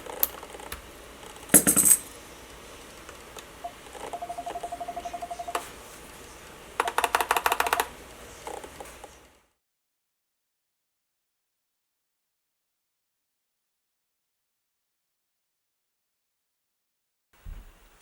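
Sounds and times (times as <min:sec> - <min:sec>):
keyboard ticks and clicks: 0:06.8 - 0:07.9.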